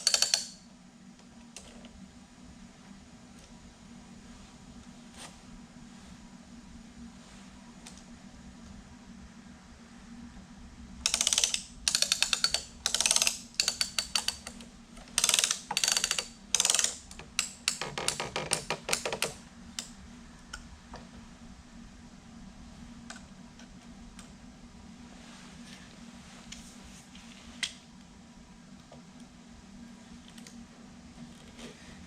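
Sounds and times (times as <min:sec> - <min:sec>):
ratchet strap clicking: 0:00.0 - 0:00.6, 0:11.1 - 0:19.4.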